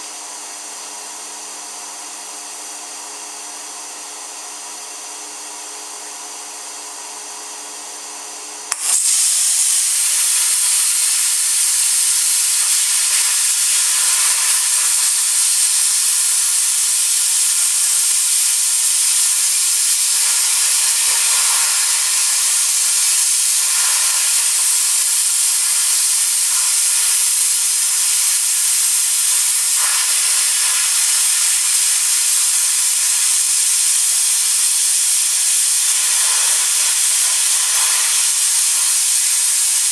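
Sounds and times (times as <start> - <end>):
plasma arc striking click: 8.7 - 33.2
machine hum: 8.7 - 33.9
plasma jet hissing: 8.7 - 39.9.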